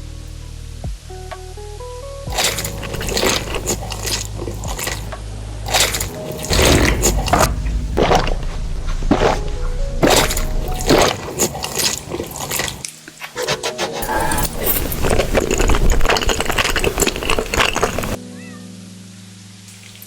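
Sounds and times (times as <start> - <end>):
wet chewing and mouth noises: 2.3 - 8.4, 10.0 - 18.2.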